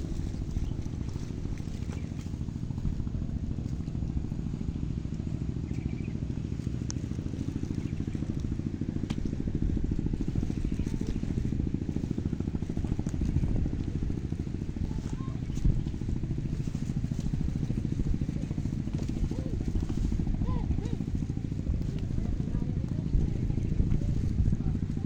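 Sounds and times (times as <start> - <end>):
small engine running: 0.0 - 25.0
faint clicks: 6.6 - 9.4.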